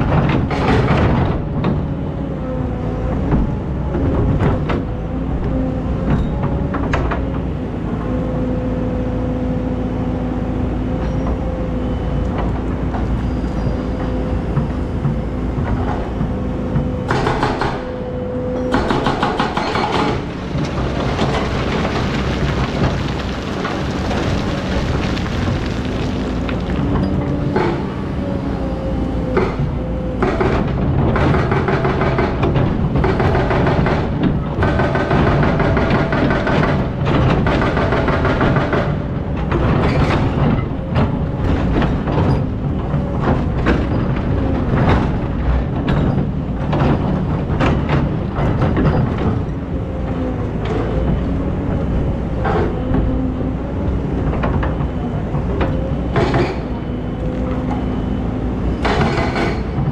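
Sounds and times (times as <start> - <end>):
excavator diesel engine: 0.0 - 59.9
bucket clanking in sand and stones: 19.4 - 28.2.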